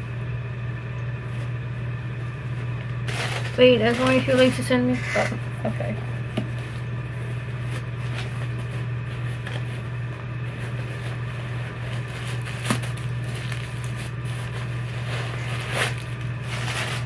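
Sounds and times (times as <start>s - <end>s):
steady low hum: 0.0s - 17.0s
sneakers and packaging rustling: 3.1s - 4.4s, 7.5s - 17.0s.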